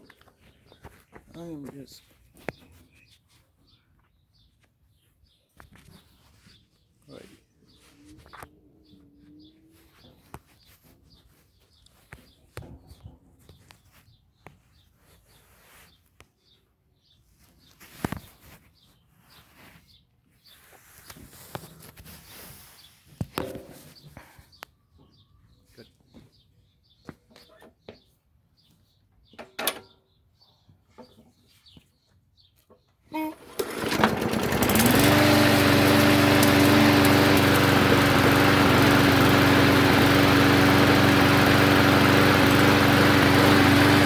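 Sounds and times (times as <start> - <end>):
faint birds chirping: 0.0 - 44.0
loud clatter: 33.5 - 44.0.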